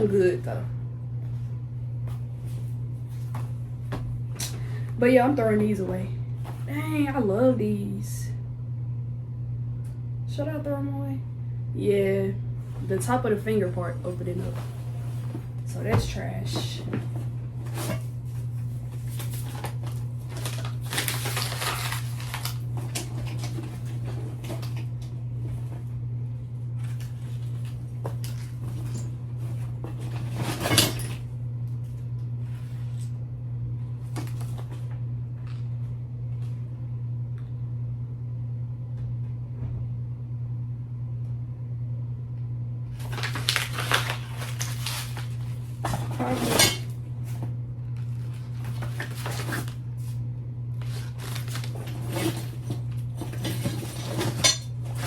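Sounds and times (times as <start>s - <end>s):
steady low hum: 0.0s - 55.0s
rustling while rummaging: 12.6s - 25.9s, 26.8s - 31.3s, 43.0s - 50.2s, 50.8s - 55.0s.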